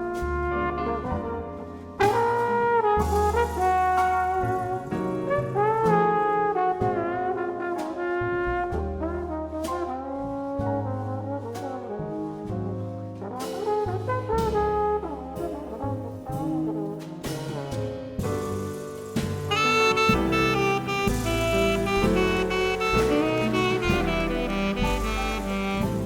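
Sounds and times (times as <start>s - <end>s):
bass line: 0.0s - 7.6s, 8.2s - 18.6s, 19.2s - 26.0s
sliding trombone notes: 0.0s - 26.0s
drum cymbals: 2.0s - 6.0s, 15.4s - 26.0s.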